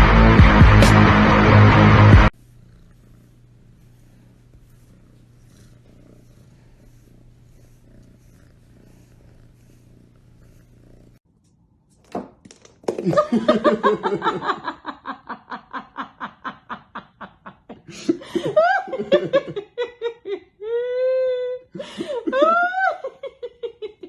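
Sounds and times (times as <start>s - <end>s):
person laughing hard: 13.0s - 24.0s.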